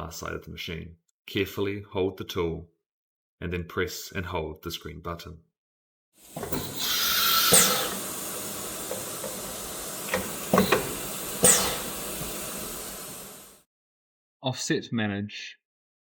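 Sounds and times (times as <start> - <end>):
compressed air hissing: 6.2 - 13.6
tool holder clicks and knocks: 6.4 - 6.8, 8.8 - 12.4.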